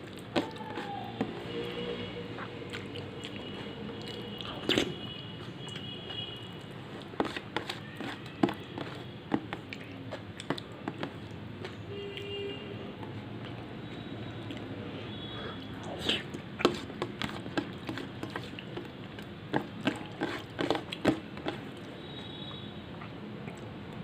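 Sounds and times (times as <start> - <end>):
person chewing food: 0.0 - 12.3, 13.0 - 24.0.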